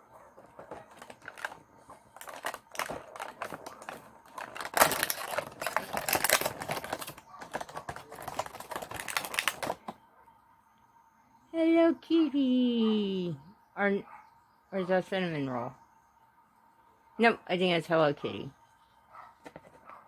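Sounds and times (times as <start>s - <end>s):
packaging crackling and rustling: 0.0s - 10.0s.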